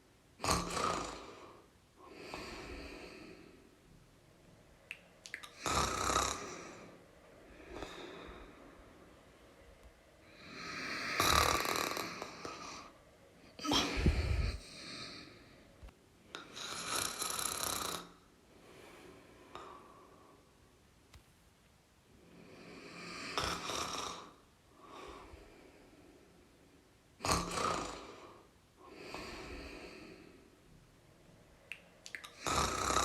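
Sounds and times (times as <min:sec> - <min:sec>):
person snoring: 0:00.4 - 0:03.6, 0:05.5 - 0:07.0, 0:10.2 - 0:12.9, 0:13.6 - 0:15.5, 0:16.4 - 0:18.2, 0:22.4 - 0:25.4, 0:27.2 - 0:30.4, 0:32.3 - 0:33.0
soft breaths out: 0:13.5 - 0:15.9.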